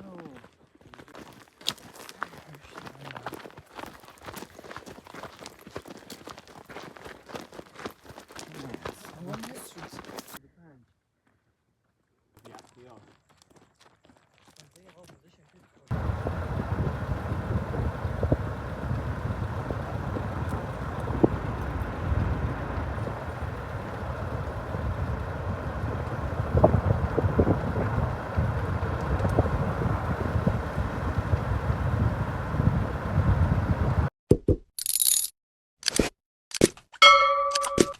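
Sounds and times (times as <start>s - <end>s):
steady low rumbling: 15.9s - 34.1s.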